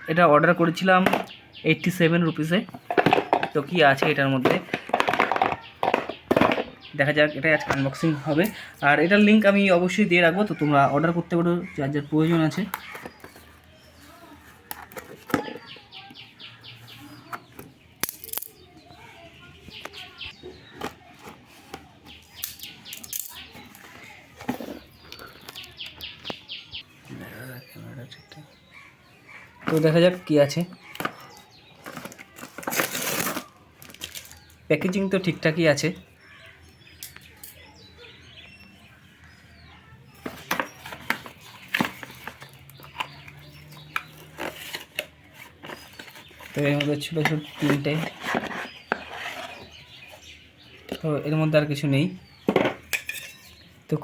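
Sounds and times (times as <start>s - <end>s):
small birds chirping: 0.0s - 54.0s
parcel clicks and rustles: 30.6s - 35.0s, 40.2s - 50.3s
packaging crackling: 30.8s - 34.6s
package being opened by hand: 31.8s - 34.5s.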